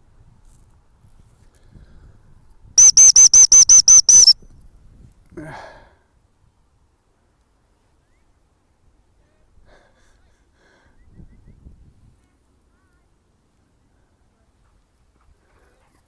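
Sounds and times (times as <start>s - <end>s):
dog whistle pips: 2.8s - 4.4s.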